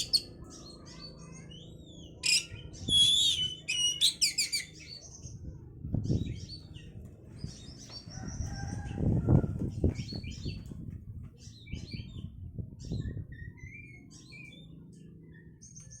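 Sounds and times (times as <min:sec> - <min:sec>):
bird chirps and whistles: 0:02.2 - 0:04.8.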